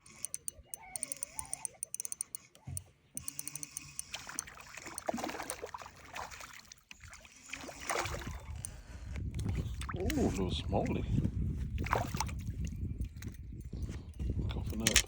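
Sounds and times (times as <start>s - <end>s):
water splashing and sloshing: 4.0s - 12.8s.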